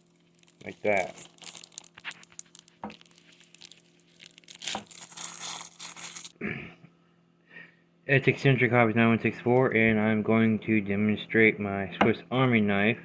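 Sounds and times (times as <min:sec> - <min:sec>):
packaging crinkling: 0:00.0 - 0:06.4.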